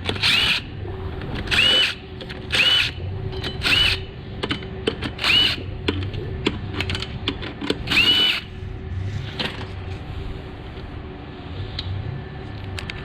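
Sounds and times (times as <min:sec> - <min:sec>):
power tool motor whining: 0:00.1 - 0:00.7, 0:01.5 - 0:03.0, 0:03.6 - 0:04.0, 0:05.2 - 0:05.6, 0:07.9 - 0:08.5.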